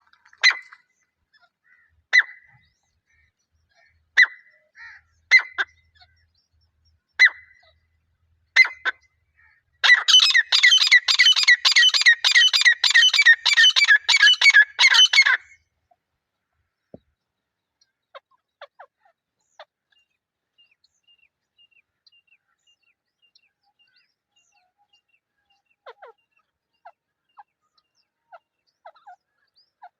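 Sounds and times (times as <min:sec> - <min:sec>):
francolin calling: 0:09.8 - 0:15.6.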